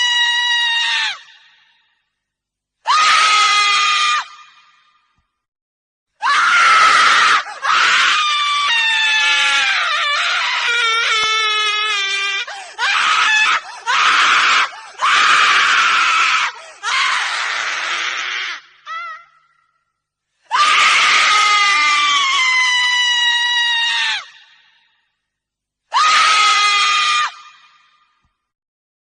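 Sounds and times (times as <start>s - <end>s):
woman screaming: 0.0s - 1.5s, 2.9s - 4.6s, 6.2s - 19.5s, 20.5s - 24.6s, 25.9s - 28.0s.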